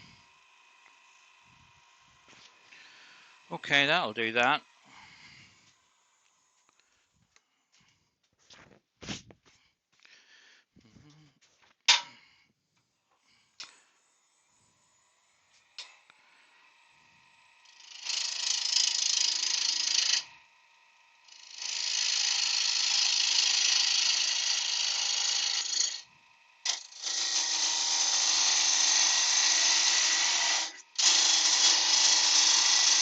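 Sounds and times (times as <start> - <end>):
machine rasping: 0.0 - 6.8, 13.3 - 33.0.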